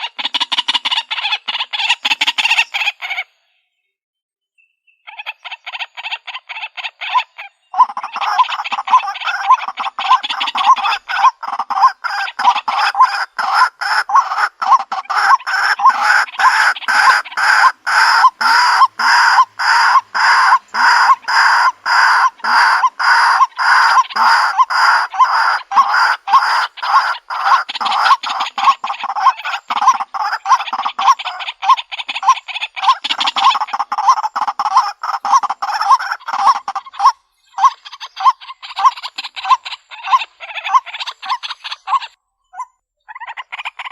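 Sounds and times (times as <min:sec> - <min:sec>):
waterhen calling: 0:00.0 - 0:03.4, 0:05.0 - 0:43.9.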